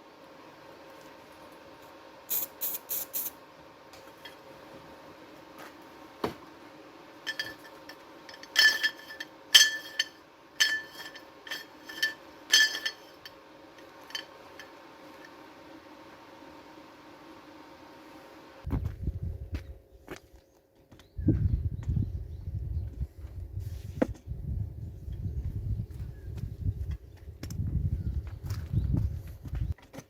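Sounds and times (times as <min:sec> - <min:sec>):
metal tool tapping steel: 0:07.3 - 0:13.3.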